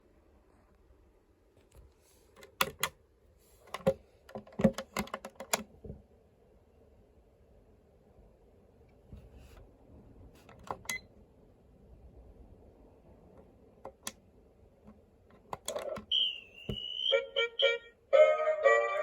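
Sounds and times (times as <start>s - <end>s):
fast electronic beeps: 16.1s - 17.8s
alarm clock wavering tone: 16.1s - 19.0s.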